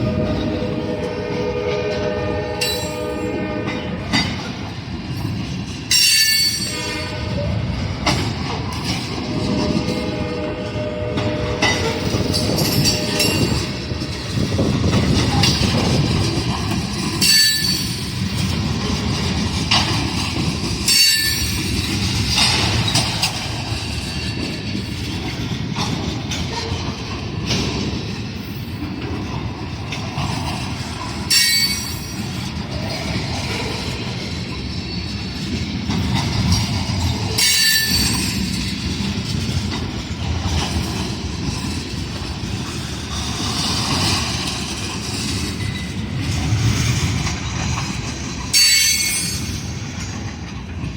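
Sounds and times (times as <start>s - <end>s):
train horn: 0.0s - 4.4s, 6.4s - 7.7s, 9.3s - 15.2s
steel wheels clacking and squealing: 0.0s - 50.9s
train engine and rail rumble: 0.0s - 50.9s.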